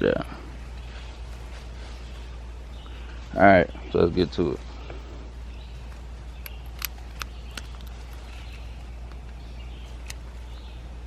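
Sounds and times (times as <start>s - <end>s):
steady low hum: 0.0s - 11.0s
metal on metal clicks: 6.4s - 9.4s.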